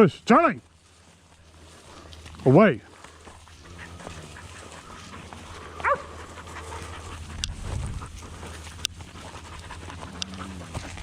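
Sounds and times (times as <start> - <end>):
dog panting: 2.9 - 11.0.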